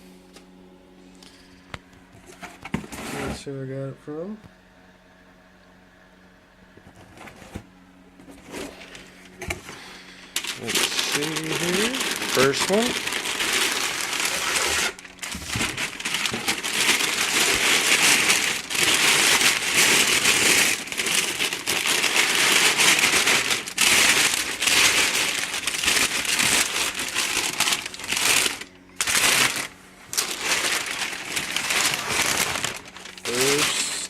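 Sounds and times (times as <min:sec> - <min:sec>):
packaging crinkling: 0:08.4 - 0:34.0.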